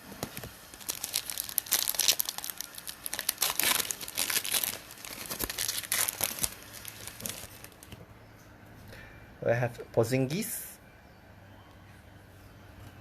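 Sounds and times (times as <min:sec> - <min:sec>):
wrapper being torn and crinkled: 0:00.2 - 0:08.0.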